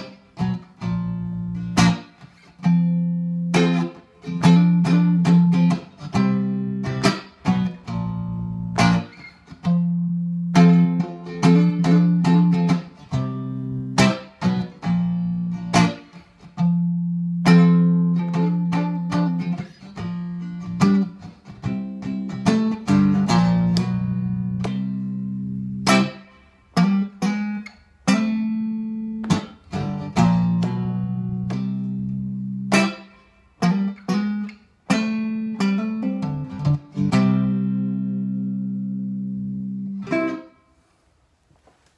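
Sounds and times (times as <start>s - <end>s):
clean electric guitar: 0.0s - 40.9s.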